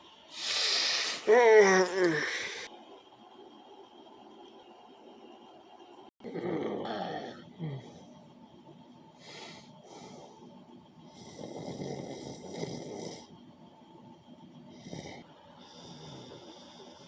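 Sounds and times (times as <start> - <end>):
person snoring: 0.4 - 2.7, 6.2 - 8.0, 11.1 - 13.3.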